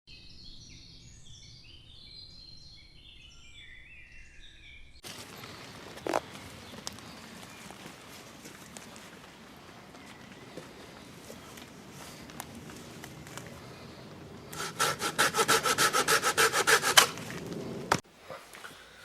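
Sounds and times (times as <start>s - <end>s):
birds chirping and whistling: 0.1s - 7.9s
outdoor background noise: 0.1s - 19.0s.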